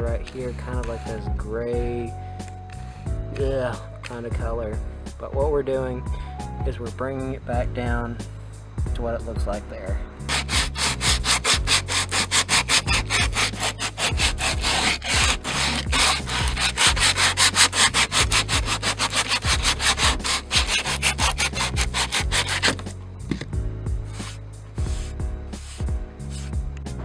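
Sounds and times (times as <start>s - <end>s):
sandpaper rubbing on wood: 10.3s - 23.0s, 24.1s - 26.6s.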